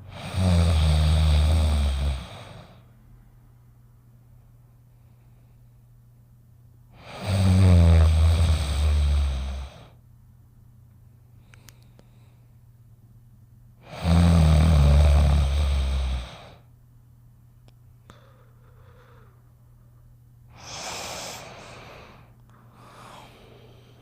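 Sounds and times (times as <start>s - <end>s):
person snoring: 0.0s - 2.8s, 7.0s - 10.0s, 13.8s - 16.6s, 20.5s - 24.0s
low steady hum: 0.0s - 24.0s
airy breath: 18.1s - 19.5s, 20.5s - 24.0s.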